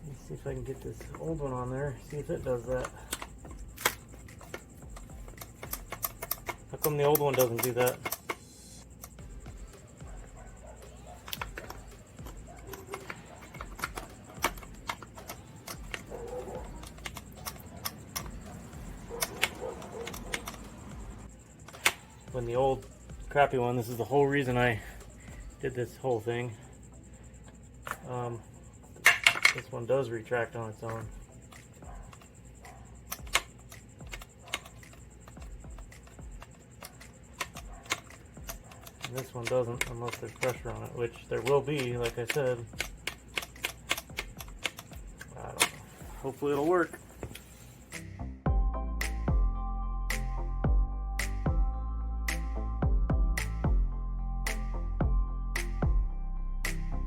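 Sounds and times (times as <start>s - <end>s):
metal parts clicking and tapping: 0.4s - 23.0s, 27.4s - 47.5s.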